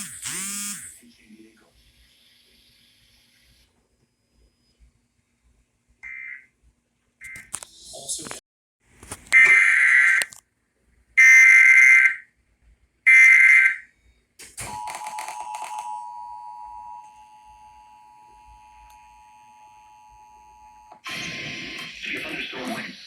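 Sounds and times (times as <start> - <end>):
buzzy digital data bursts: 0.0 - 0.9
person speaking: 7.6 - 8.4.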